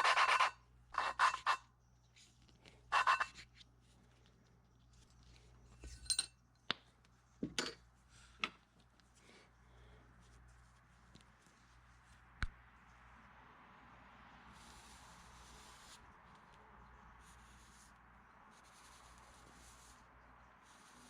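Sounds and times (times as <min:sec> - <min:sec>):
light metal clinks: 0:05.8 - 0:06.4.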